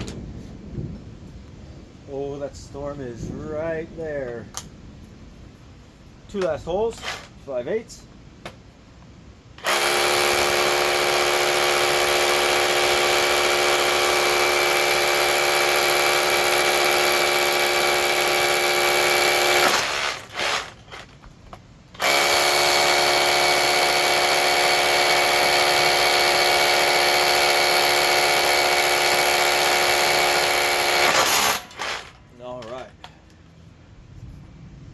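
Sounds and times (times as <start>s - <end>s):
rotary hammer drilling: 9.6s - 21.1s, 22.0s - 32.8s.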